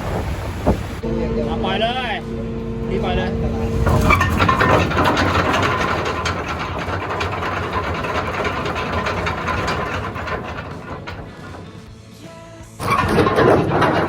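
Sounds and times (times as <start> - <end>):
anchor chain rattling out: 3.6 - 14.0.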